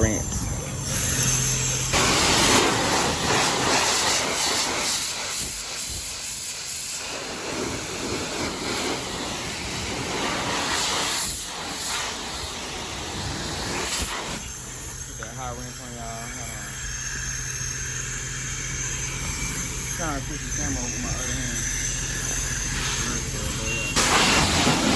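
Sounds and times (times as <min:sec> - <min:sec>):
pressure washer water spray hiss: 0:00.0 - 0:24.9.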